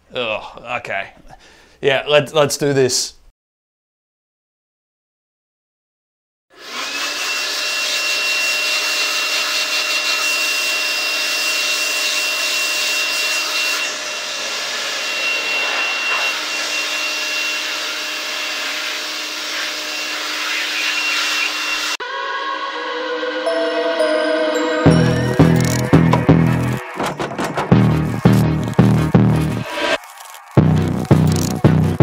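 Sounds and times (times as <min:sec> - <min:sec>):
electric air blower whining: 0:06.6 - 0:22.0.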